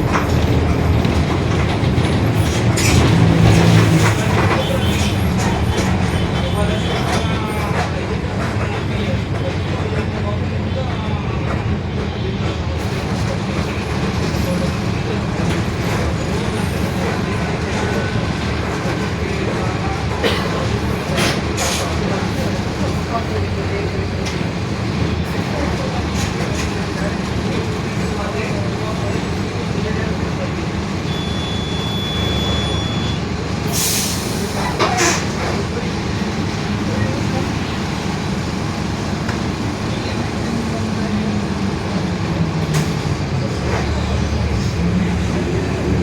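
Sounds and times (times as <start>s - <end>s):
diesel bus engine running: 0.0s - 46.0s
drivetrain and road rumble: 0.0s - 46.0s
air brake hisses: 33.7s - 35.4s.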